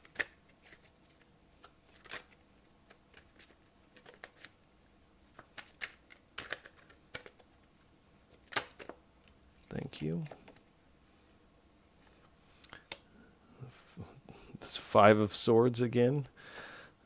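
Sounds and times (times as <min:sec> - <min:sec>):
cards shuffling by hand: 0:00.0 - 0:09.0, 0:09.6 - 0:10.8.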